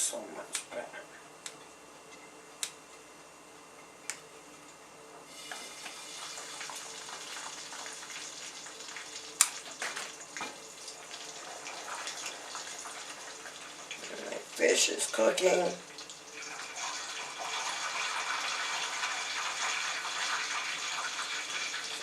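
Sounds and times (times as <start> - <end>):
tap water running: 5.3 - 22.0.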